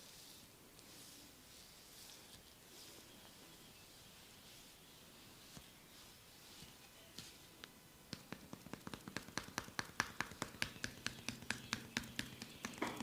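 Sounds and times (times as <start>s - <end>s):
percussion massage taps: 7.2s - 13.0s.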